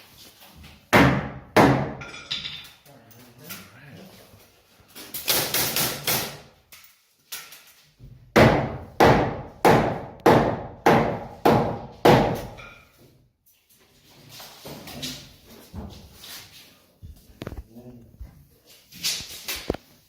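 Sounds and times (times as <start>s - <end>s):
hammer striking wood: 0.9s - 2.1s, 8.3s - 12.8s.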